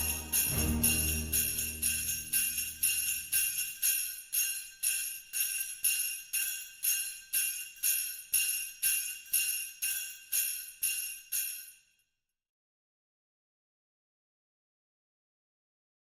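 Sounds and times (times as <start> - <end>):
sleigh bells jingling: 0.0 - 12.0.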